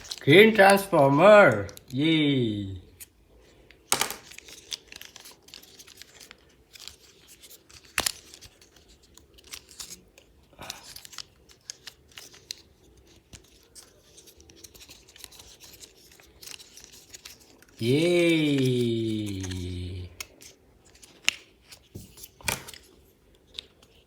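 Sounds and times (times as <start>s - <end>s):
sharp plastic snap: 3.9s - 4.3s.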